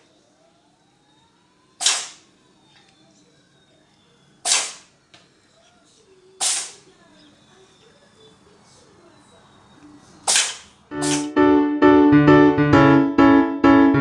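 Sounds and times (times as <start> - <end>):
cat sneezing: 4.4 - 4.8, 6.4 - 6.8, 10.3 - 11.3.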